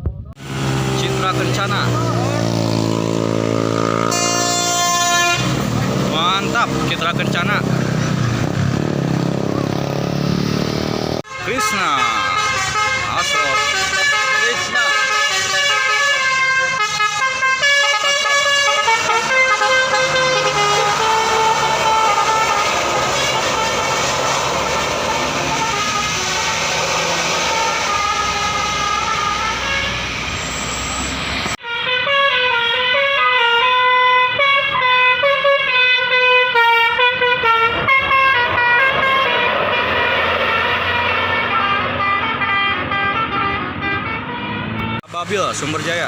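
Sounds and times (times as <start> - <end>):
bus engine running: 0.0 - 46.0
bus horn playing a tune: 1.4 - 6.2, 11.2 - 30.4, 31.6 - 45.1
loud even noise: 19.8 - 31.6.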